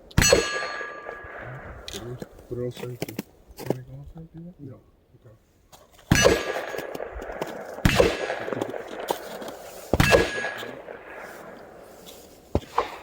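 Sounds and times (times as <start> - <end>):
loud gunshots with echo: 0.2 - 1.9, 6.1 - 13.0.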